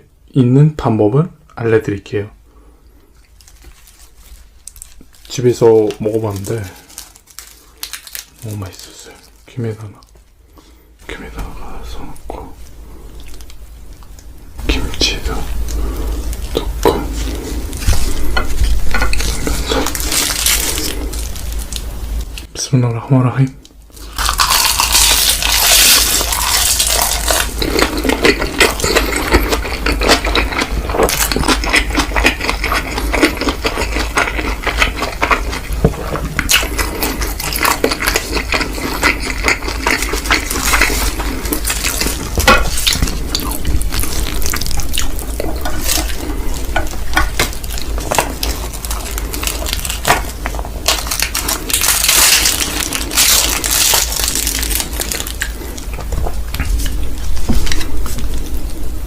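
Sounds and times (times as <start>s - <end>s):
wet chewing and slurping noodles: 24.0s - 58.2s.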